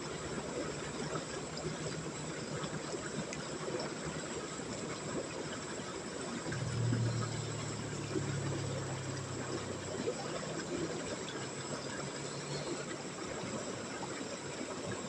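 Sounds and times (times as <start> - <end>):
river water rushing: 6.3 - 15.0
low droning hum: 6.4 - 13.6.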